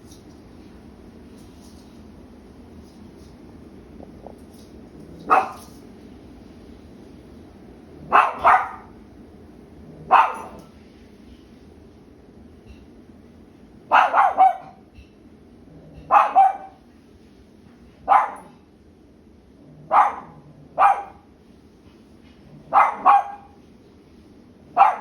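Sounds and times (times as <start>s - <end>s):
dog barking: 5.2s - 5.7s, 8.0s - 9.0s, 10.0s - 10.7s, 13.9s - 14.8s, 16.0s - 16.8s, 18.0s - 18.6s, 19.9s - 21.3s, 22.6s - 23.6s, 24.7s - 25.0s.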